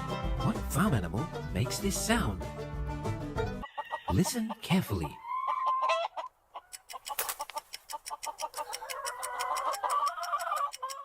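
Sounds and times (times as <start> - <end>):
chicken clucking: 3.4 - 11.0.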